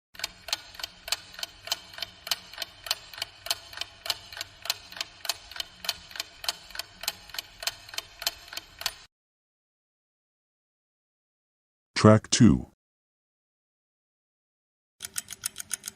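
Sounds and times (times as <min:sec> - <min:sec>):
mechanical clock ticking: 0:00.2 - 0:09.1, 0:15.0 - 0:15.9.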